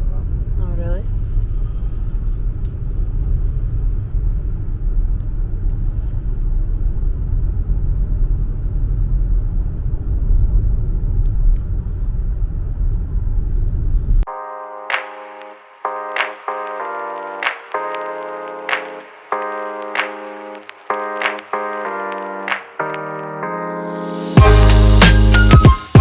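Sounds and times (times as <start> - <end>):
car engine and road noise: 0.0 - 14.3
bell-like holiday music: 14.3 - 26.0.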